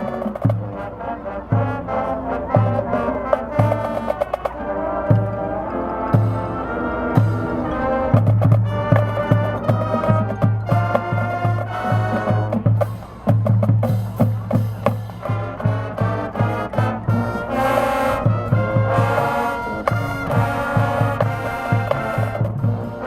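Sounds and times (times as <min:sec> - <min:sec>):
brass trumpets and trombones: 0:00.0 - 0:23.0
marching band playing: 0:00.0 - 0:23.0
percussion: 0:02.5 - 0:23.0
low bass notes: 0:04.6 - 0:11.4.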